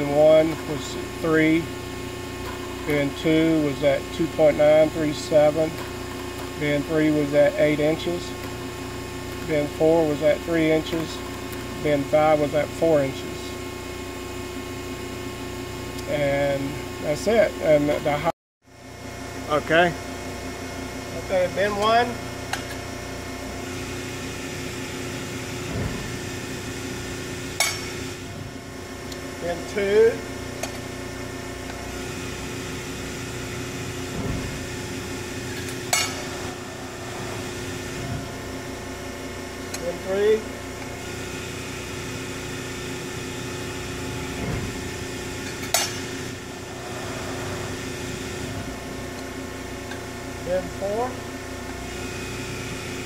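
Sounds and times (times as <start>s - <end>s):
hydraulic pump hum: 0.0s - 53.0s
sharp metallic clack: 27.6s - 28.0s, 35.6s - 36.4s, 45.4s - 46.1s.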